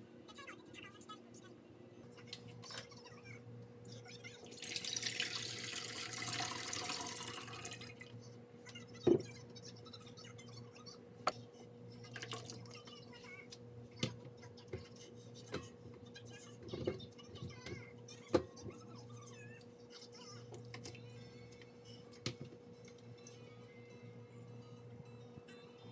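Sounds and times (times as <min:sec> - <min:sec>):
water running: 0:04.5 - 0:08.1, 0:12.1 - 0:12.8.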